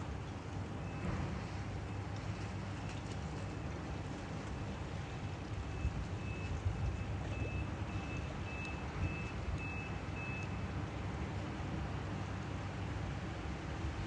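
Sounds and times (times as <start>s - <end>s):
vehicle reversing alarm beeping: 5.7s - 10.6s.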